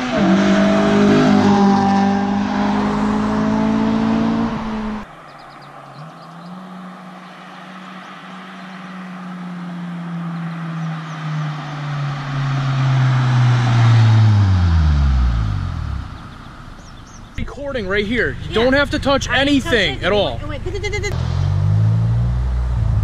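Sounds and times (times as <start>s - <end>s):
car driving past: 0.0s - 17.4s, 21.1s - 23.0s
car exhaust burst: 12.8s - 19.1s.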